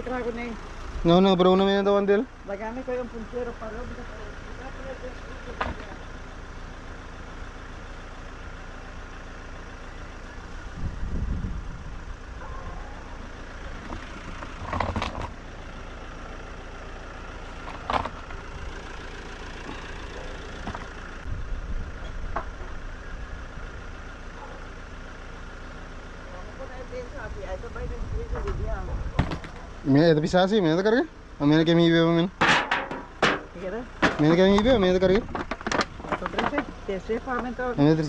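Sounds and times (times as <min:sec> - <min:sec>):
engine idling: 0:00.0 - 0:38.0
thumps and knocks: 0:32.4 - 0:34.3.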